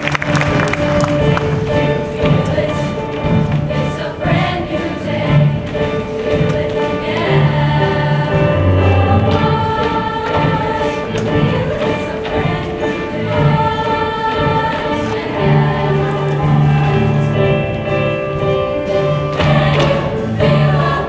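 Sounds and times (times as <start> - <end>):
choir singing held chords: 0.0 - 21.0
instrumental accompaniment with bass: 6.5 - 9.8, 15.2 - 21.0.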